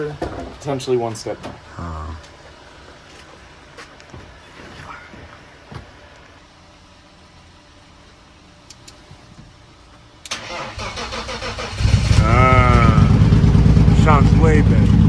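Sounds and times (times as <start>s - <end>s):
starter motor cranking: 10.3s - 14.9s
car engine running loud: 11.2s - 15.0s.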